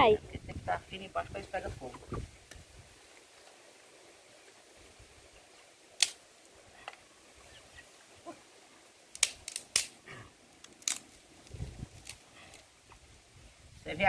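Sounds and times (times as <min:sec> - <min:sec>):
firewood sticks clacking: 0:06.0 - 0:06.2, 0:09.1 - 0:10.0, 0:10.6 - 0:13.0.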